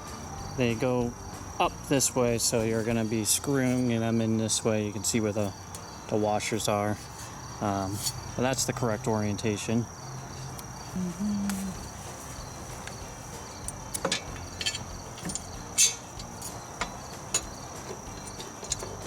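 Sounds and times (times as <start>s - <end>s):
crickets chirping: 0.0s - 19.0s
sharp clicks and knocks: 13.6s - 19.0s.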